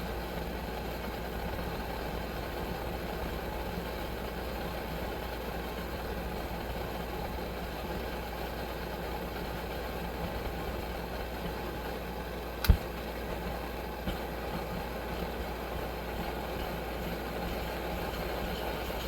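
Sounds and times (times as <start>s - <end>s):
gas stove burners roaring: 0.0s - 19.0s
sharp knock: 12.6s - 12.8s.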